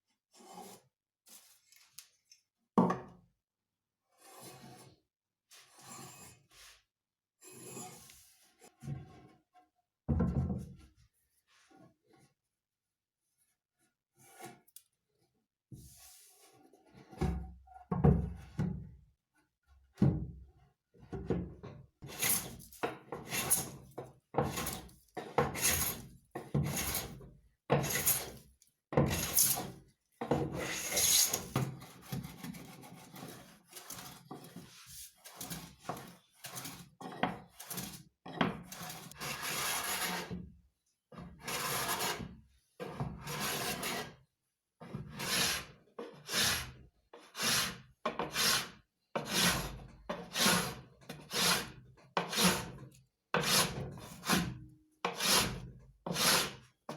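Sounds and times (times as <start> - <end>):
hand tool scraping wood: 22.0 - 28.4, 29.0 - 40.4, 41.4 - 42.3, 42.9 - 44.2, 45.1 - 56.6.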